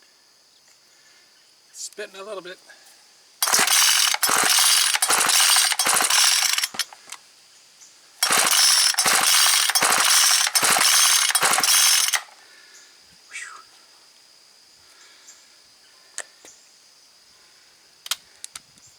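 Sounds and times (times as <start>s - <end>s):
trimmer pull-start rope rasping: 3.4s - 7.2s, 8.2s - 12.4s.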